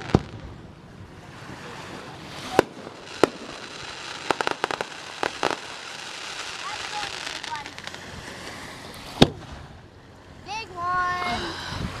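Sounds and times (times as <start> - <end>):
fireworks bangs: 0.0 - 8.1, 9.1 - 9.6
fireworks cracking: 0.0 - 8.1, 9.0 - 9.5.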